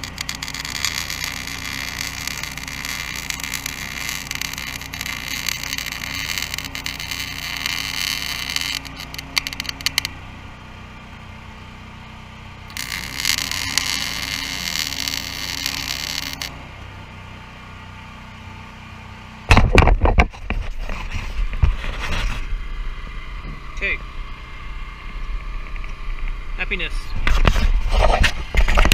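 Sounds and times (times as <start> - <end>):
crackling pops: 0.0 - 10.1, 12.7 - 16.5
welder arc sizzling: 0.0 - 10.2, 12.6 - 16.6
generator humming: 0.0 - 28.9
loud low buffeting: 0.0 - 28.9.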